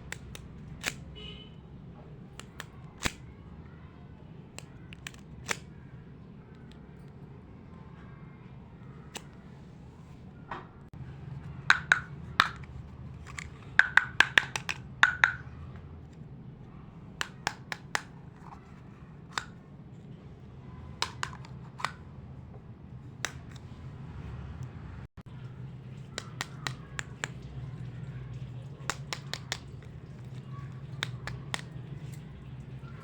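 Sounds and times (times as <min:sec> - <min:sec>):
plastic toy pieces clicking: 0:00.0 - 0:01.0, 0:02.3 - 0:03.2, 0:04.6 - 0:05.7, 0:11.7 - 0:15.5, 0:21.0 - 0:22.0, 0:28.7 - 0:31.8
faint low hum: 0:18.1 - 0:33.0.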